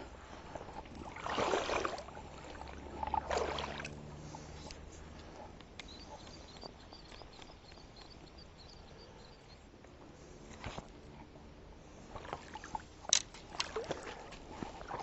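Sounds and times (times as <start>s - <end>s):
paddle splashing through water: 0.0s - 4.5s, 12.1s - 15.0s.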